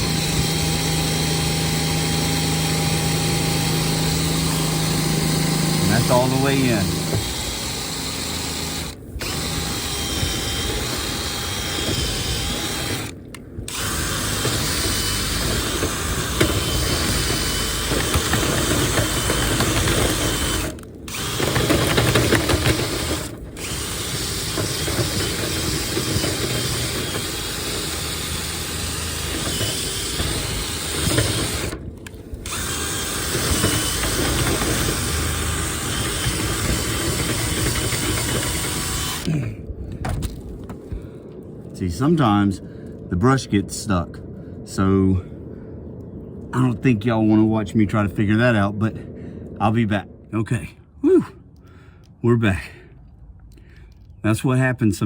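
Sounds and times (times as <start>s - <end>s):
power drill spinning brush in duct: 0.0s - 39.6s.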